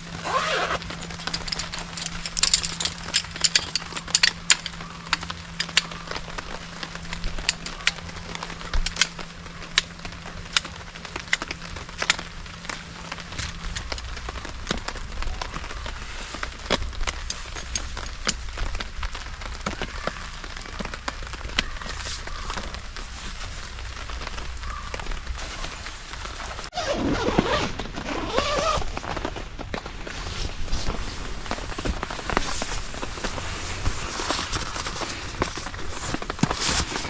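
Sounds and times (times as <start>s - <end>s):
large raindrops tapping: 0.0s - 26.8s
light rain hiss: 0.0s - 26.8s, 27.9s - 37.0s.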